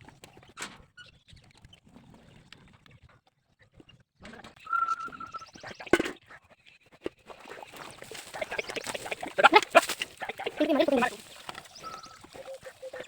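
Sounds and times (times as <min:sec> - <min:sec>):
farm animals calling: 0:04.7 - 0:06.0, 0:07.4 - 0:13.0.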